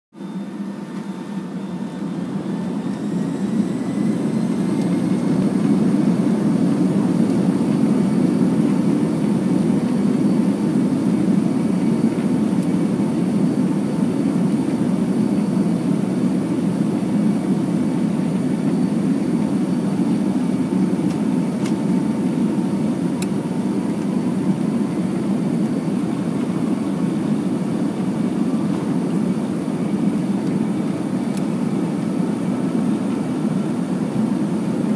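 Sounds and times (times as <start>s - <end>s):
jet engines from inside cabin: 0.2s - 34.9s.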